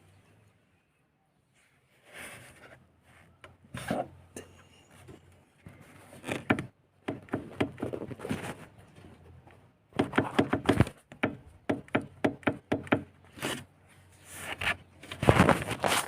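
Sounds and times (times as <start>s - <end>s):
plastic dashboard rattling: 6.2s - 9.1s, 9.9s - 13.2s.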